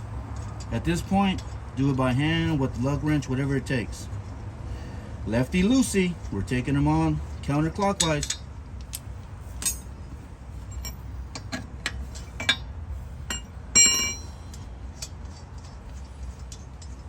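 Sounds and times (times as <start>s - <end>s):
steady low rumble: 0.0s - 17.0s
metal clinks of lug nuts: 7.4s - 10.0s, 10.6s - 17.0s.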